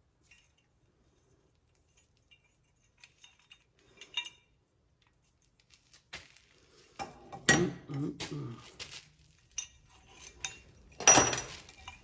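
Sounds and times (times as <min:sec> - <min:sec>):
small metal parts clinking: 0:00.0 - 0:06.1, 0:09.0 - 0:12.0.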